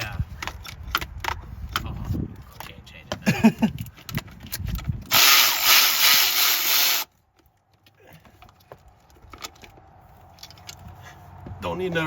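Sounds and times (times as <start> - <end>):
cordless electric ratchet running: 5.1 - 7.1.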